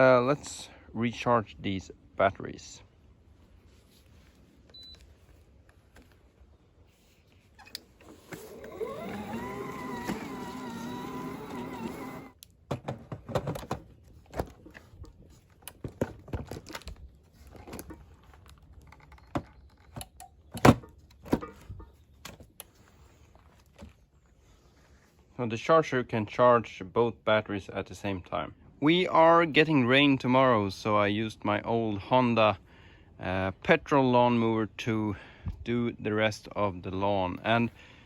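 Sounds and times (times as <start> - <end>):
pitched whine with a waver: 8.4 - 12.4.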